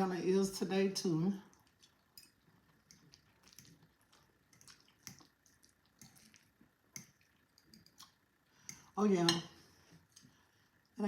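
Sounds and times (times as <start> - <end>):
soft chewing and mouth smacks: 1.4 - 9.0, 9.8 - 11.0.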